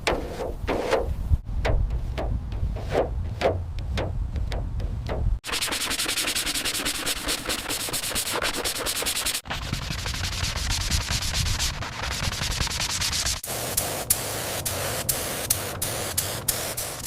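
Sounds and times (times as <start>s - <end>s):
abrasive sanding strokes: 5.4s - 17.0s.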